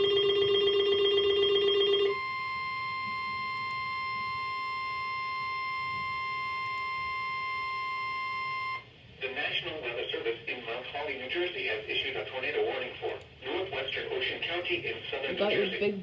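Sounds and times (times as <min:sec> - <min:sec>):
buzzy alarm tone: 0:00.0 - 0:08.8
steady high warning tone: 0:00.0 - 0:08.9.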